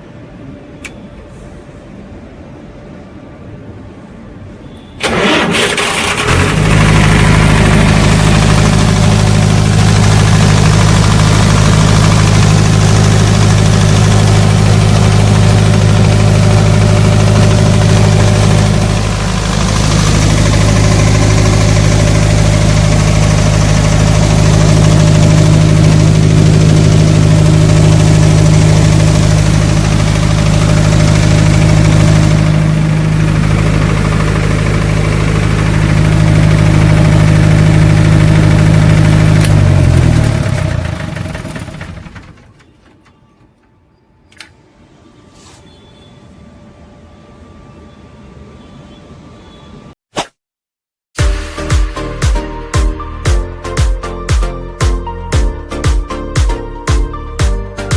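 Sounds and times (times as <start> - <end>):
diesel generator engine running: 5.0 - 43.4.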